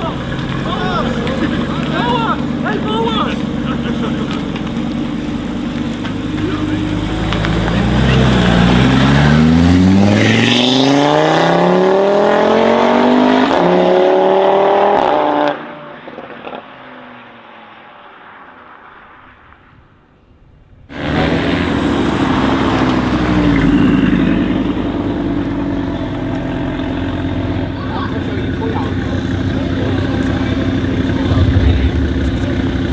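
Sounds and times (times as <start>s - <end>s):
exhaust pops and crackles: 0.0s - 11.5s, 20.9s - 32.9s
car engine accelerating hard: 0.0s - 17.4s, 20.9s - 32.9s.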